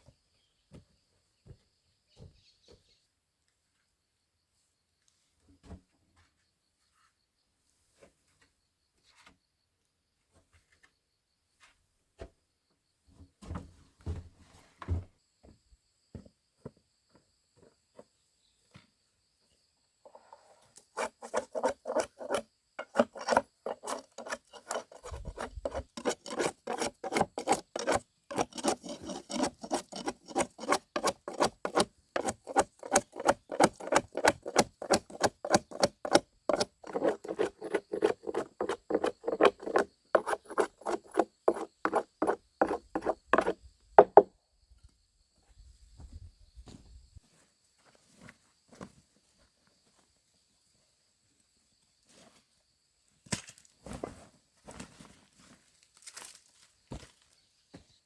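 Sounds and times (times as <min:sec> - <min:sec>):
saw rasping through wood: 0:21.0 - 0:44.2.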